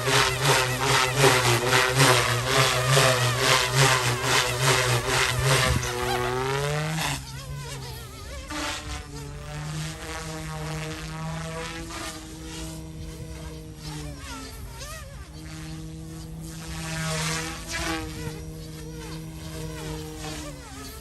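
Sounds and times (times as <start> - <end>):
toy helicopter buzzing whine: 0.0 - 21.0.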